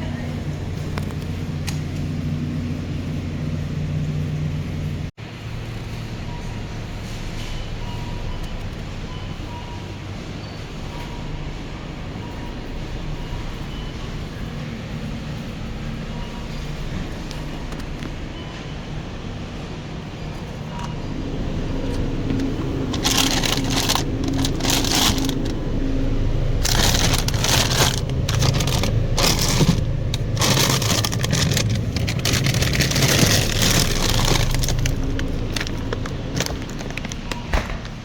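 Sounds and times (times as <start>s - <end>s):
shopping cart rattling: 20.4s - 38.0s.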